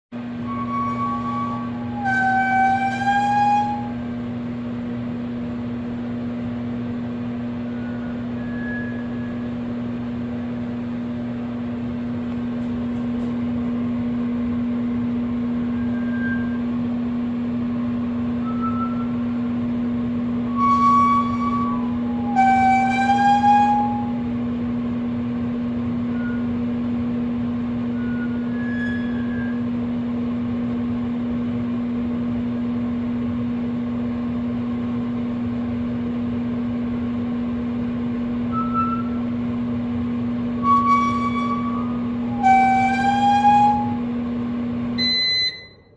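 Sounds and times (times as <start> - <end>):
high wavering squeals: 0.2 - 4.4, 7.6 - 9.8, 15.7 - 16.8, 18.4 - 19.3, 20.5 - 24.4, 26.1 - 26.6, 27.9 - 29.8, 38.5 - 39.3, 40.6 - 44.3
microwave oven humming: 0.2 - 22.7, 23.4 - 45.9.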